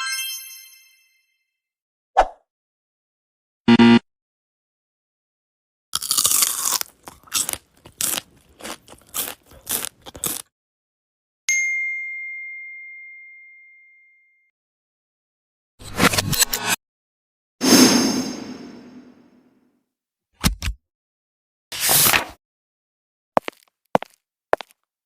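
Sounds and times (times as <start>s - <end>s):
irregular crunching: 6.0s - 10.5s
high ding: 11.5s - 14.5s.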